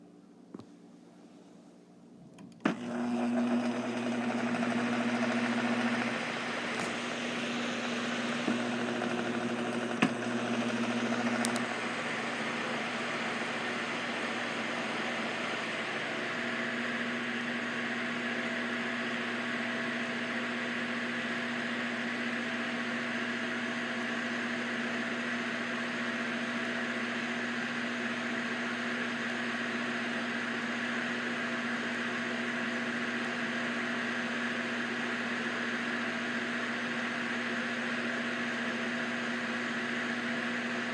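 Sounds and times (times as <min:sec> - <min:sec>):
fan motor hum: 0:02.4 - 0:20.1.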